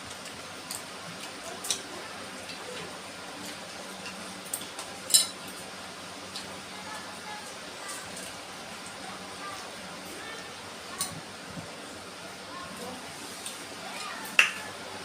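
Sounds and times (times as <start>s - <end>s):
dishes clinking: 5.0s - 5.4s.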